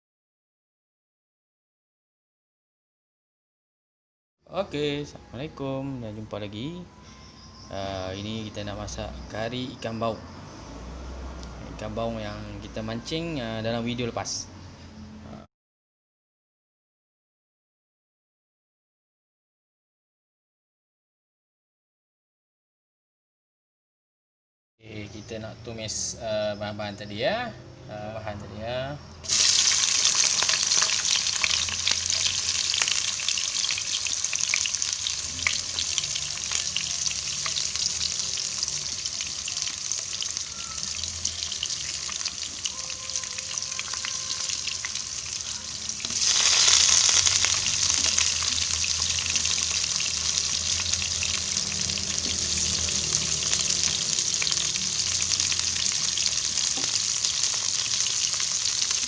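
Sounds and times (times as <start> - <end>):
onions sizzling in hot oil: 29.2 - 59.0.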